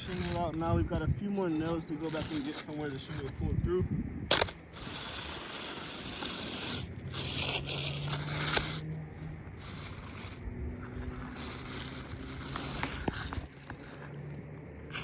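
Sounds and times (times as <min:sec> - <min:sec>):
pry bar scraping shingles: 0:00.0 - 0:03.4, 0:04.3 - 0:08.9, 0:09.5 - 0:14.1.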